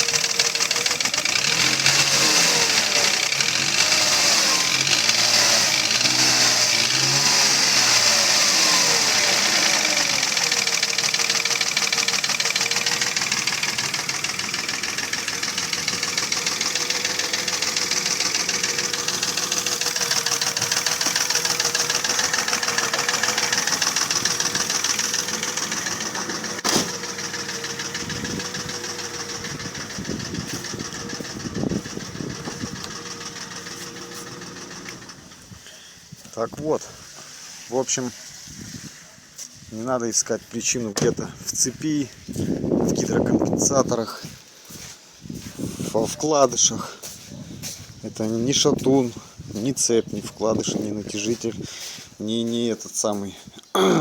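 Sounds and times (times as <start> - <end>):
engine running with knock: 0.0 - 35.6.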